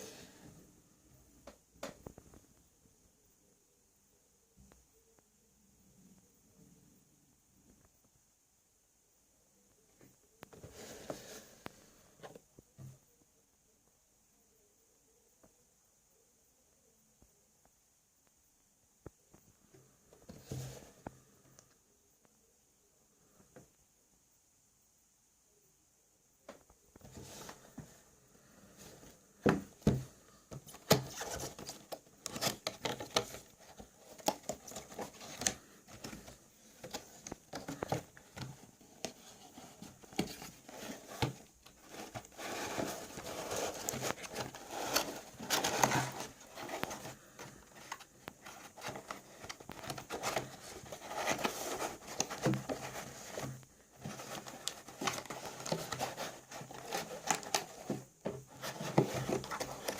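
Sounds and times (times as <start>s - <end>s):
hands handling packaging: 29.4s - 59.9s.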